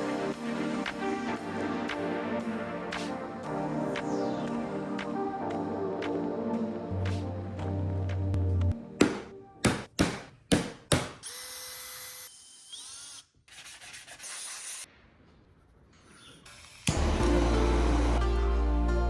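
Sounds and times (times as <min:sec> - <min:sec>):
music: 0:00.0 - 0:09.9, 0:16.9 - 0:19.0
power tool running: 0:11.2 - 0:13.2, 0:16.5 - 0:18.8.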